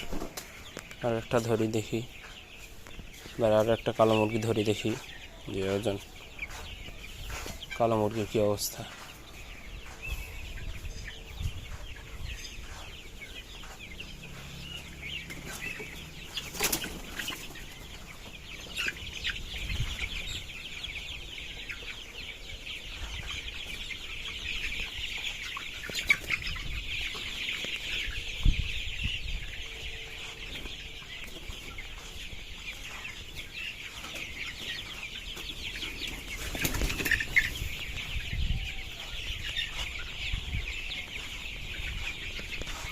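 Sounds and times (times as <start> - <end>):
chickens clucking and cheeping: 0.0 - 42.9
wings flapping: 36.4 - 37.2.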